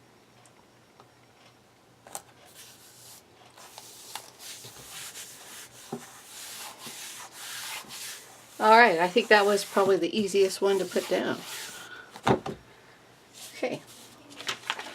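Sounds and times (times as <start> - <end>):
sticker rubbed onto canvas: 2.5 - 11.9.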